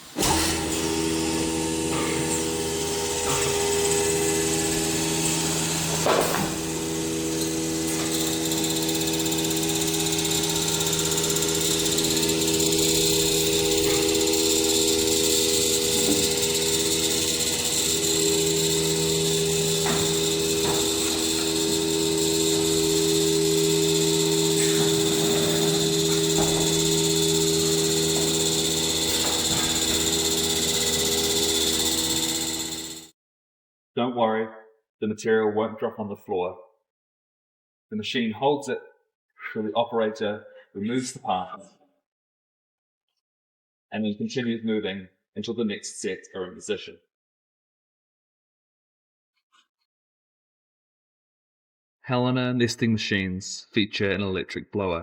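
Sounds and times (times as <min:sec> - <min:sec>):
router machine humming: 0:00.0 - 0:33.1.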